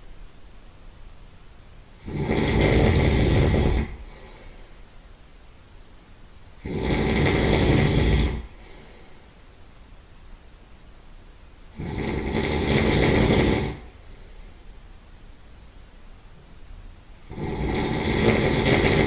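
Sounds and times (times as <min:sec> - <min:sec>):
quiet breathing: 0:01.9 - 0:05.3, 0:06.5 - 0:09.7, 0:11.7 - 0:15.0
loud nasal snoring: 0:02.0 - 0:04.6, 0:06.6 - 0:09.1, 0:11.7 - 0:14.3, 0:17.2 - 0:19.0.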